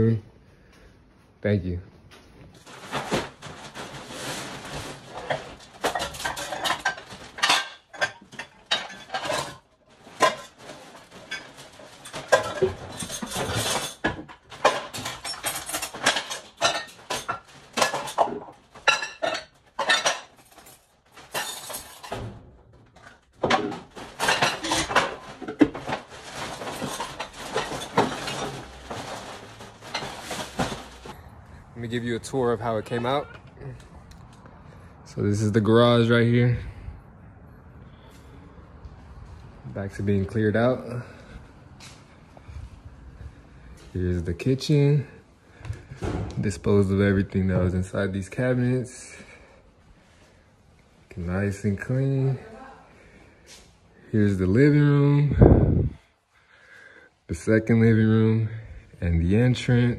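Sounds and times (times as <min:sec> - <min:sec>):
objects and glass clattering: 0:02.6 - 0:31.3.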